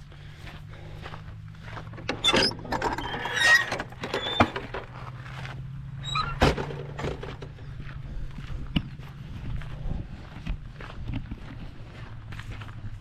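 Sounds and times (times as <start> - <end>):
hinge squeaking: 2.0 - 5.0, 6.0 - 7.6.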